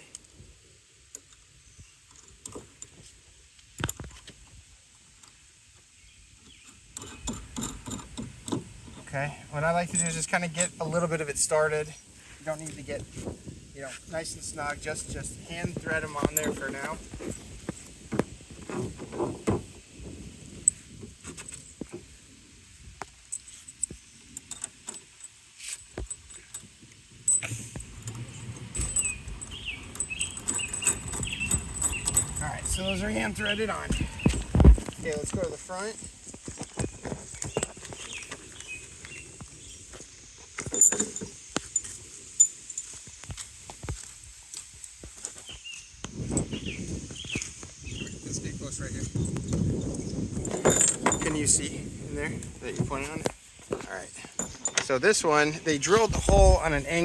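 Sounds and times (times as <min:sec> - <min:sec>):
nuts and washers jingling: 0:06.4 - 0:44.0, 0:44.8 - 0:57.0
small metal hardware clinking: 0:06.5 - 0:09.1, 0:09.8 - 0:11.0, 0:15.9 - 0:17.5, 0:23.2 - 0:34.4, 0:40.6 - 0:43.1, 0:49.1 - 0:51.7, 0:52.7 - 0:55.0.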